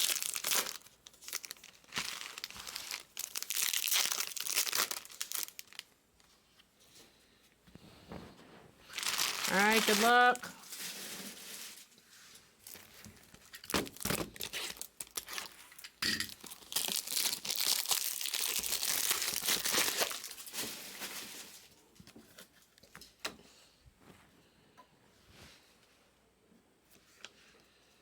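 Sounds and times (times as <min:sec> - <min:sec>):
foil card pack tearing and crinkling: 0:00.0 - 0:05.9, 0:08.9 - 0:11.8, 0:12.6 - 0:21.6.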